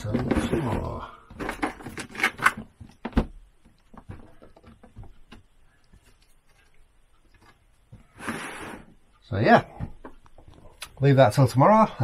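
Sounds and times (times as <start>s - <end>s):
faint taps and rustles: 2.6s - 8.1s, 9.7s - 11.0s.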